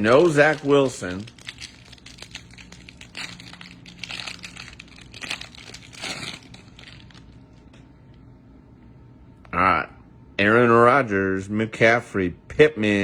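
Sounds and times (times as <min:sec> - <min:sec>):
cards being handled: 0:00.0 - 0:07.8
wrapper crinkling: 0:00.0 - 0:07.8.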